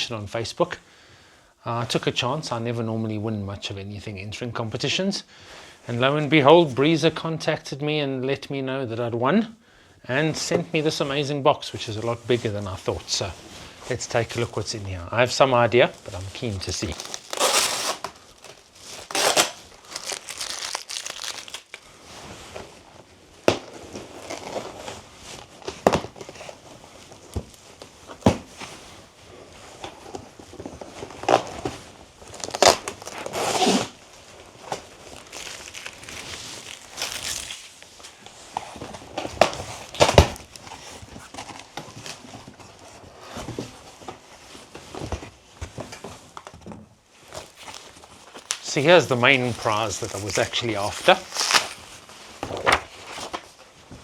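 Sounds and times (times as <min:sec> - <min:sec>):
packing material rustling: 0:12.8 - 0:22.8, 0:30.6 - 0:42.2, 0:47.2 - 0:53.6
cardboard tearing: 0:16.0 - 0:21.9, 0:32.3 - 0:34.0, 0:34.6 - 0:37.9, 0:39.4 - 0:41.3, 0:47.3 - 0:53.4.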